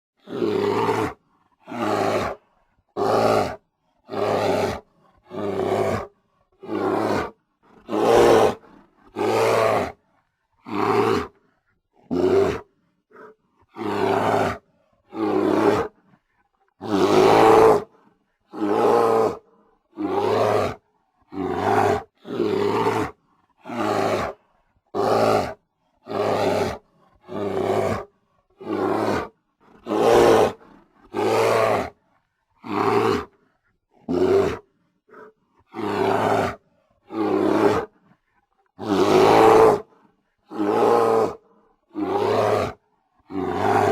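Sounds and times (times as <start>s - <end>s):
grizzly bear roaring: 0.2s - 32.0s, 32.6s - 43.9s.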